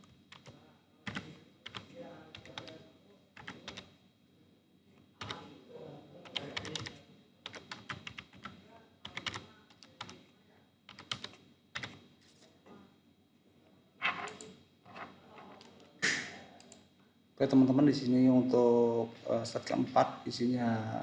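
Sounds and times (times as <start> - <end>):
typing on computer keyboard: 0.0 - 2.8, 3.4 - 3.9, 5.2 - 5.5, 6.2 - 10.2, 10.9 - 12.1.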